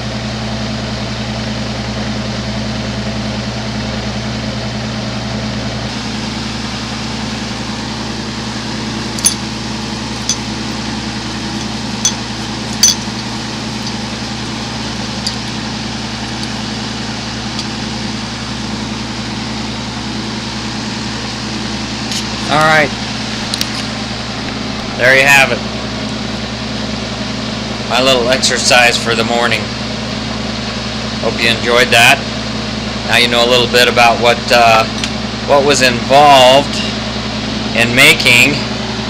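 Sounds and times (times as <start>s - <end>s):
mechanical hum: 0.0s - 39.0s
glass clinks: 9.2s - 9.5s, 11.6s - 13.3s.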